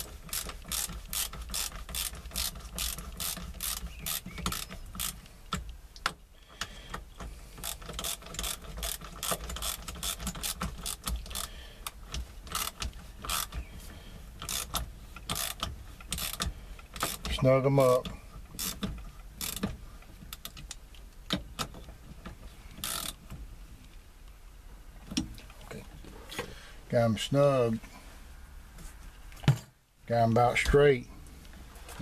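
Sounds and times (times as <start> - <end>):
ratchet wrench clicking: 0.0 - 6.2, 7.6 - 13.6, 14.4 - 17.4, 18.5 - 19.7, 22.8 - 23.2.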